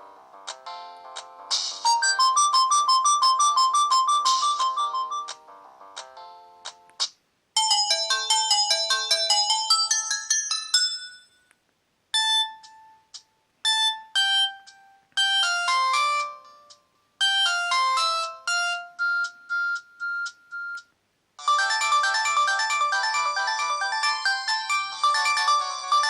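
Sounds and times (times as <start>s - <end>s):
mobile phone ringtones: 1.9s - 5.4s, 7.6s - 11.5s, 13.7s - 26.0s.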